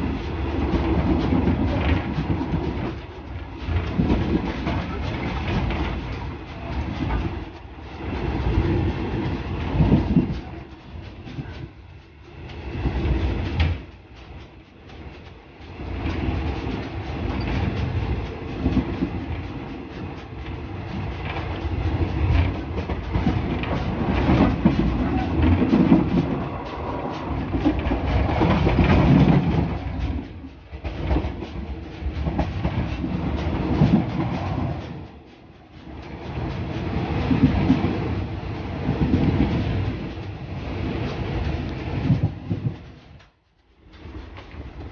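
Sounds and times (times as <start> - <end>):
train wheels clattering on rails: 0.0 - 44.9.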